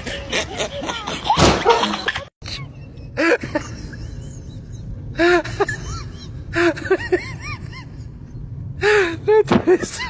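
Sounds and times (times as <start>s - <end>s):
steady low hum: 2.0s - 10.0s.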